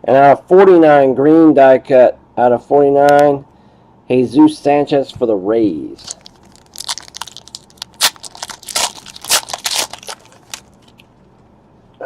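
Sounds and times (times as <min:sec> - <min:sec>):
plastic packaging crinkling: 0:06.0 - 0:11.0.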